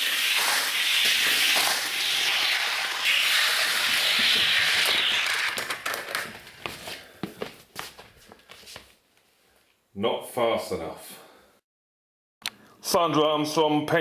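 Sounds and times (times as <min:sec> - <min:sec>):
toy wheels hissing on track: 0:00.0 - 0:06.0.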